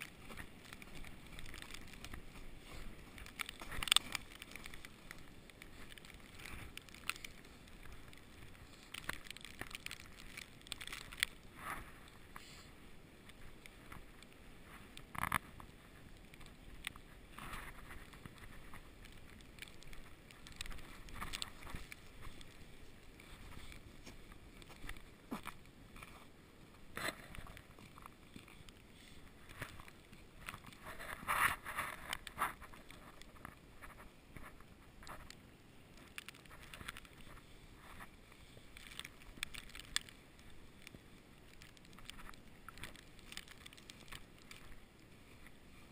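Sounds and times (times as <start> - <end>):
footsteps crunching in snow: 0.0 - 12.7, 13.3 - 33.4.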